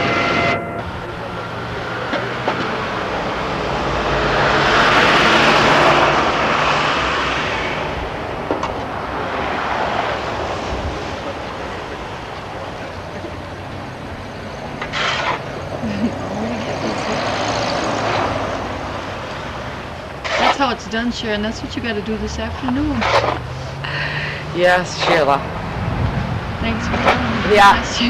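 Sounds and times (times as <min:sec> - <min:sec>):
vehicle driving past: 0:00.0 - 0:28.0
low engine hum: 0:00.6 - 0:28.0.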